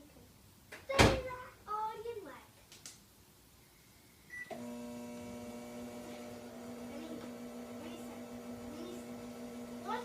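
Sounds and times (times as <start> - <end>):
microwave humming: 4.3 - 10.0.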